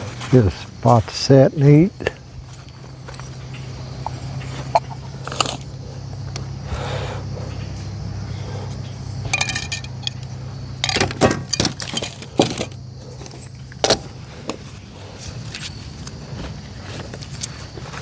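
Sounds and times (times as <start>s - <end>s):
low hum: 2.2s - 16.0s
metallic clinks and rattles: 8.7s - 14.2s.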